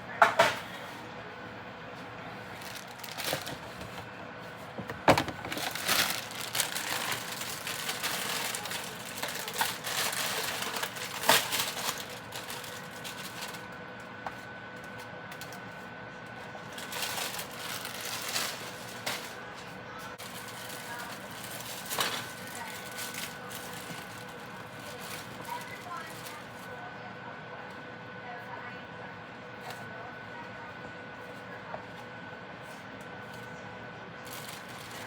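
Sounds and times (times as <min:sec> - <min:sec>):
rustling: 0:02.6 - 0:04.0, 0:05.1 - 0:13.6
kitchen knocks and clicks: 0:04.8 - 0:05.6.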